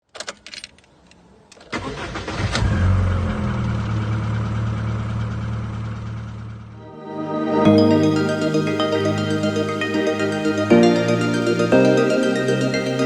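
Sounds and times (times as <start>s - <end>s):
car engine idling: 3.2s - 6.8s.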